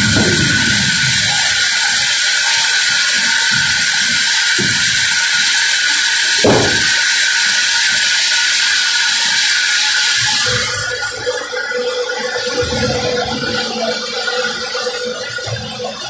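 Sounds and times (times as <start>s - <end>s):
sawmill machinery high-pitched hiss: 0.0s - 11.8s
low knocks: 6.4s - 7.2s.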